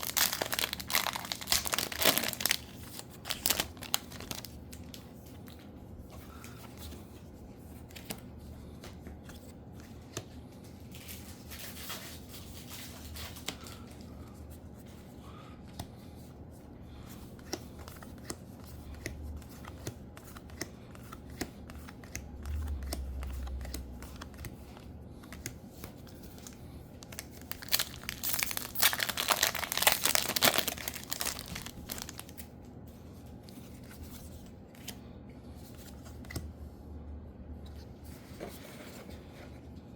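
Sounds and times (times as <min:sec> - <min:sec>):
foil wrappers crinkling and tearing: 0:00.0 - 0:04.9, 0:26.4 - 0:32.5.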